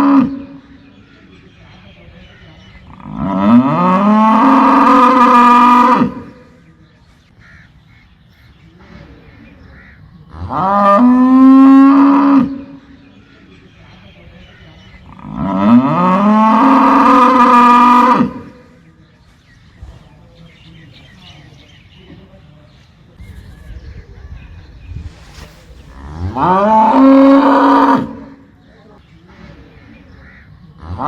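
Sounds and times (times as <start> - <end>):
cow mooing: 26.0 - 28.4.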